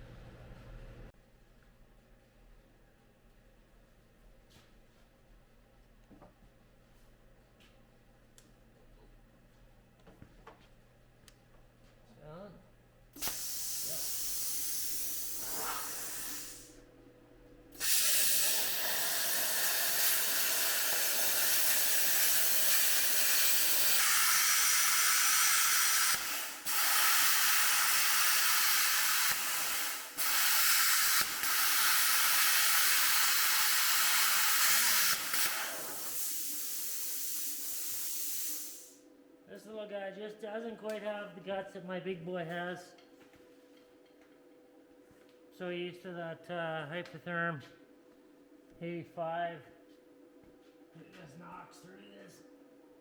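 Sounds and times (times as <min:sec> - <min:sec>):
plasma cutter hissing: 0:13.2 - 0:16.8, 0:17.8 - 0:39.0.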